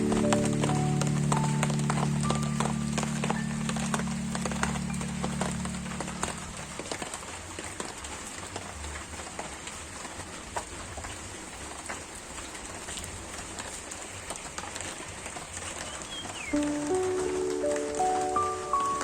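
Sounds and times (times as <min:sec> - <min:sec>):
raindrops ticking sharply: 0:00.0 - 0:07.7, 0:15.6 - 0:19.0
steady rain falling: 0:00.0 - 0:19.0.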